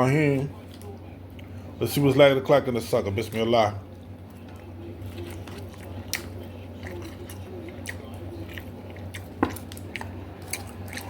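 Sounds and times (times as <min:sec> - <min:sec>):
steady low hum: 0:00.0 - 0:11.0
person chewing food: 0:04.3 - 0:11.0.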